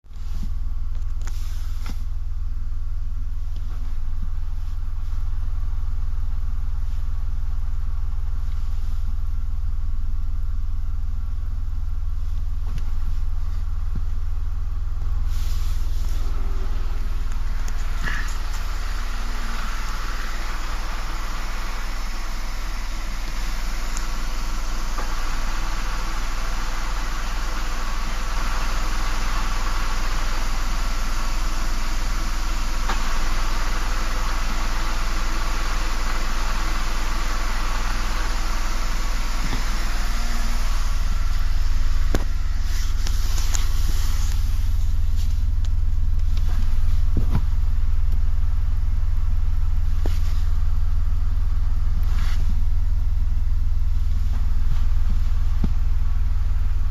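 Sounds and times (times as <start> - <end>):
car engine running: 0.1 - 56.9.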